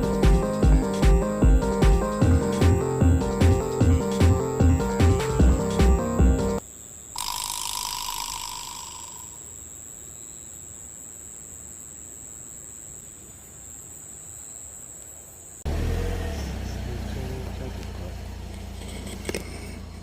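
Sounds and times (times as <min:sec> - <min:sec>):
high-pitched insect trill: 0:07.1 - 0:15.0.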